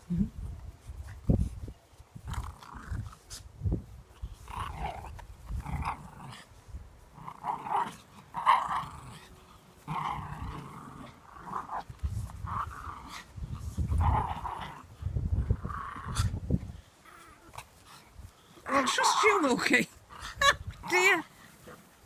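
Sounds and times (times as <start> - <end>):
dog growling: 7.1 - 13.3.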